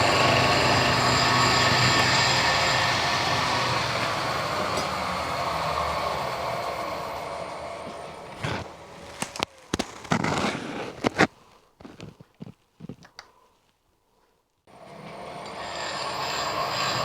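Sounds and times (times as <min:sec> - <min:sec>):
milling machine running: 0:00.0 - 0:08.9, 0:14.7 - 0:17.0.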